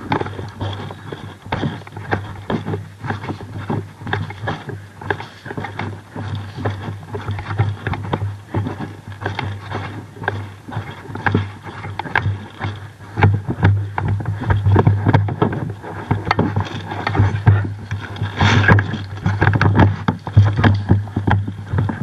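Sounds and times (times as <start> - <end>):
steady low hum: 0.0 - 22.0
footsteps: 15.8 - 21.2.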